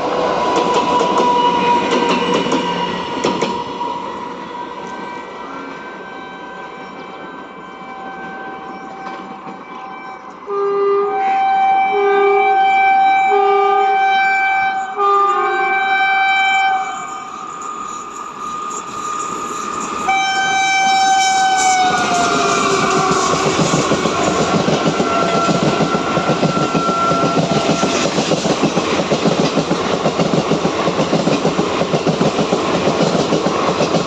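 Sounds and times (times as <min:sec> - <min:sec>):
passing train rumble: 0:00.0 - 0:10.6, 0:14.8 - 0:34.0
locomotive air horn honking: 0:03.8 - 0:17.4, 0:20.0 - 0:28.0.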